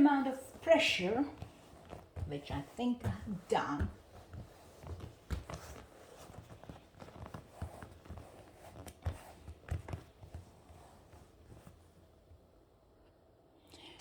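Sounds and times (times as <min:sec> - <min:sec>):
hands handling things: 0:01.4 - 0:11.9.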